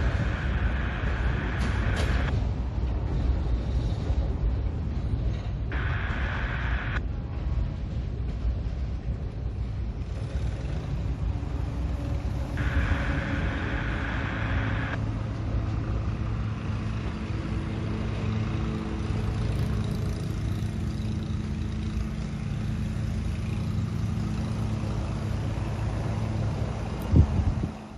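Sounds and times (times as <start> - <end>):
diesel locomotive engine rumbling: 0.0 - 27.9
higher-pitched sound: 12.6 - 15.0.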